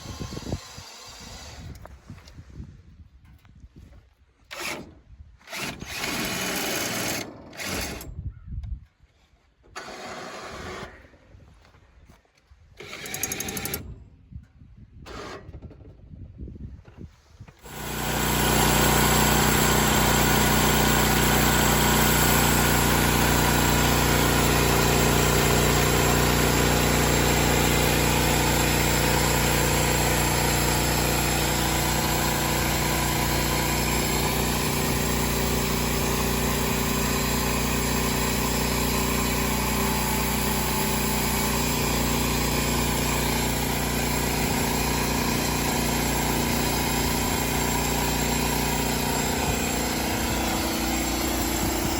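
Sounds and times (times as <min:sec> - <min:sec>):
small sawmill engine running: 0:00.0 - 0:01.8, 0:05.5 - 0:08.1, 0:09.8 - 0:11.0, 0:12.8 - 0:13.9, 0:17.6 - 0:51.9.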